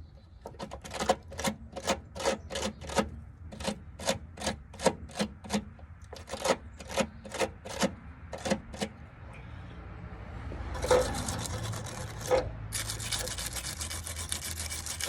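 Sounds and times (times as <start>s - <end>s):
wire brush scraping metal: 10.7s - 15.0s.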